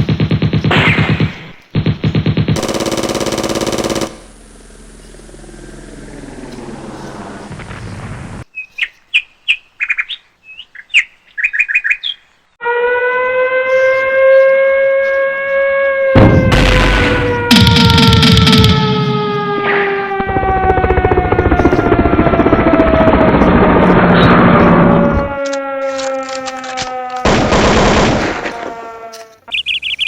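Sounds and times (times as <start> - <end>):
rapid buzzing pulses: 0.0 - 7.8, 16.2 - 25.4.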